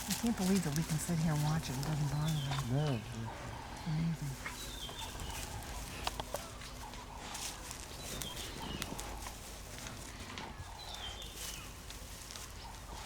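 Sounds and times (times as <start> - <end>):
snaps of dogs feeding: 0.0 - 13.0
faint clicks and rustling: 4.4 - 13.0.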